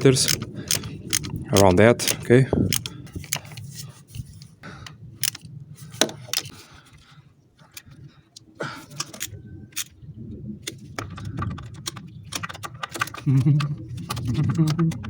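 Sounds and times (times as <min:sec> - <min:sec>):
metal tools clinking: 0:08.8 - 0:09.9.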